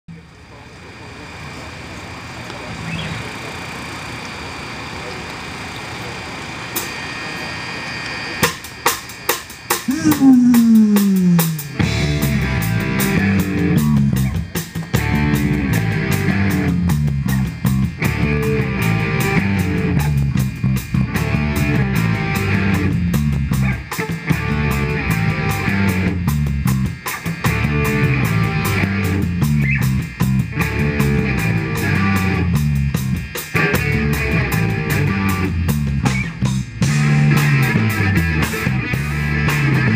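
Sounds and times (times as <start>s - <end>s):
rock-funk band playing: 8.4s - 39.9s
low sliding bass note: 9.9s - 23.5s.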